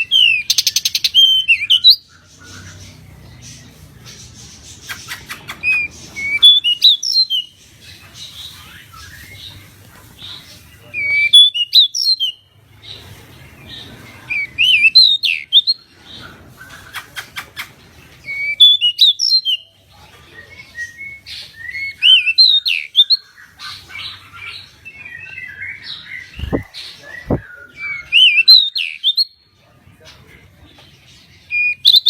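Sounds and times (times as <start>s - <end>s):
bird whistling song: 0.0s - 3.7s, 4.7s - 7.5s, 8.4s - 9.6s, 11.0s - 12.4s, 14.3s - 15.8s, 16.6s - 19.7s, 20.4s - 23.3s, 24.9s - 29.4s, 31.5s - 32.0s
dull low thumps: 26.4s - 27.5s.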